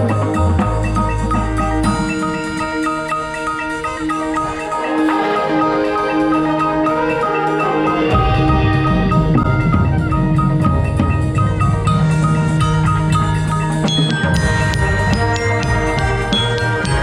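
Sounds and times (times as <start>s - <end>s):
low ensemble sound: 0.0s - 17.0s
xylophone and glockenspiel notes: 0.0s - 17.0s.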